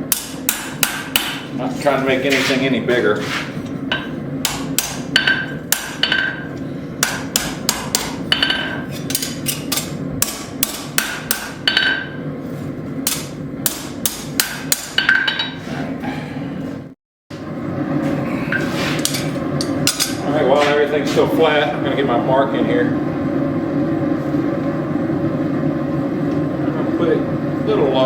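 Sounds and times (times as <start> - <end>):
hammer striking steel on anvil: 0.1 - 1.5, 3.9 - 12.2, 13.0 - 15.6.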